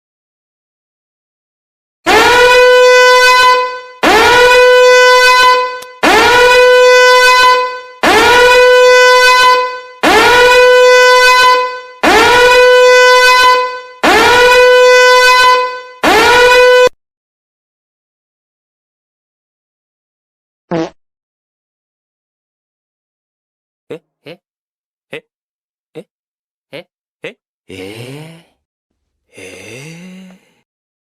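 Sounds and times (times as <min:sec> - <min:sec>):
brassy horn blasts: 0:02.1 - 0:16.9.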